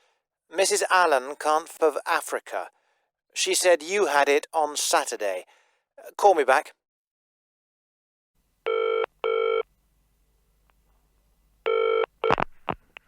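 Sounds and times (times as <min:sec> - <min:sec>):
telephone ringing: 0:08.7 - 0:09.6, 0:11.7 - 0:12.4.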